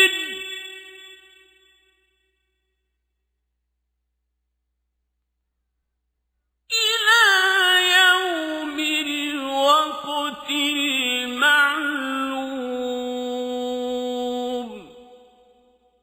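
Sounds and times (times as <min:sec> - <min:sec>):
man chanting melismatic recitation: 0:00.0 - 0:01.1, 0:06.8 - 0:15.2.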